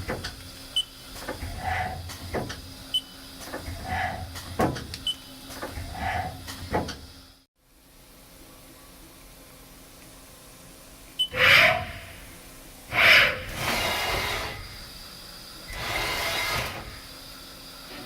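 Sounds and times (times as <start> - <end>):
loud hissing bursts: 11.4 - 15.0, 15.7 - 17.2.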